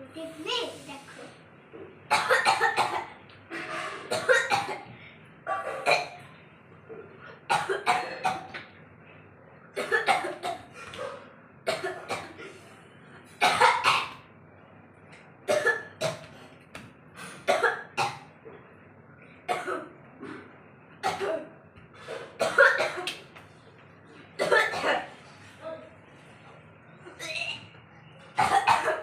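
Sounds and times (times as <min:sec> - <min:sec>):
person coughing: 0:02.1 - 0:04.9, 0:07.5 - 0:08.5, 0:09.8 - 0:12.6, 0:19.5 - 0:23.2, 0:24.4 - 0:25.1, 0:28.4 - 0:29.0.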